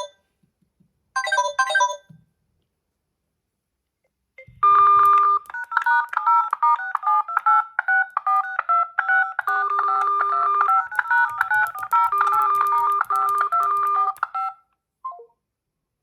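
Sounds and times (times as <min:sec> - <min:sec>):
smartphone ringtone: 0:01.2 - 0:02.1, 0:04.4 - 0:15.3.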